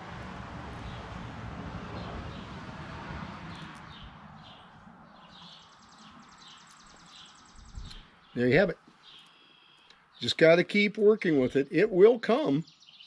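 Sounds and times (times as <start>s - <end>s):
steady rushing noise: 0.0s - 5.2s
small birds chirping: 3.5s - 13.0s.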